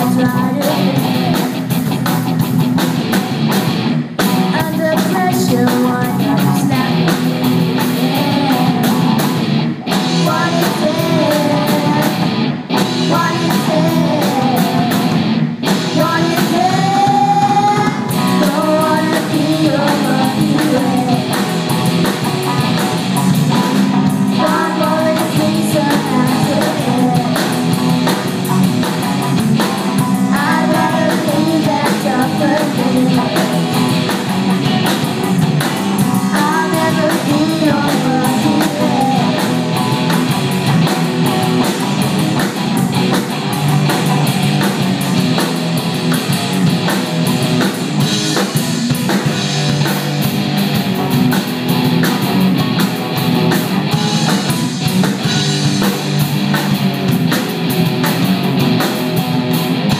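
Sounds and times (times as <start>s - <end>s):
person singing: 0.0s - 1.5s, 4.5s - 7.2s, 7.8s - 15.2s, 15.8s - 21.5s, 23.6s - 27.6s, 29.9s - 34.1s, 36.0s - 40.1s
drum kit: 0.0s - 59.9s
electric guitar: 0.0s - 59.9s.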